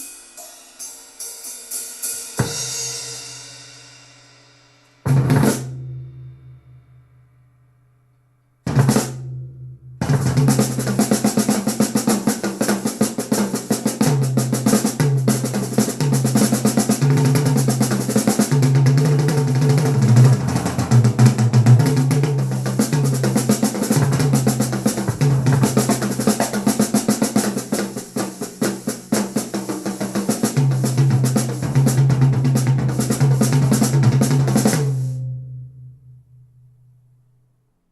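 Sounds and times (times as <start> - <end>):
pulsing bass line: 19.5 - 22.3.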